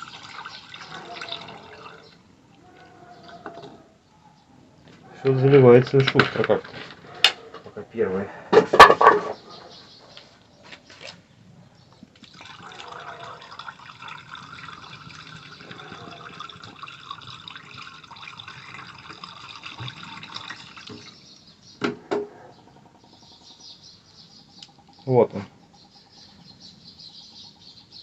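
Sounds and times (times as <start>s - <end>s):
liquid pouring: 0.0s - 3.8s, 12.2s - 21.4s.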